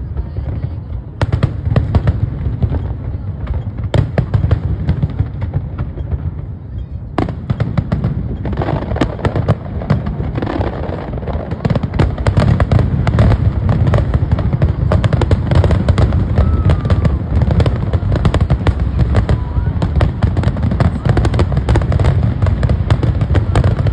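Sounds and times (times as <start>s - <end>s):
fireworks bangs and crackles: 0.0s - 23.9s.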